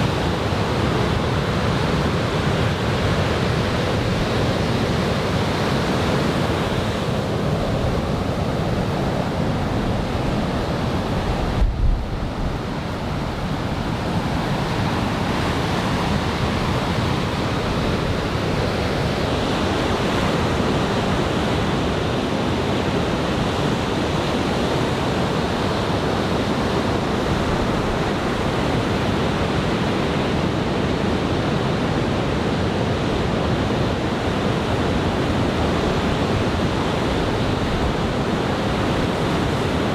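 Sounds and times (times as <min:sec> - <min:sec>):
wind bump on microphone: 0:00.0 - 0:19.3
heavy waves breaking: 0:00.0 - 0:39.9.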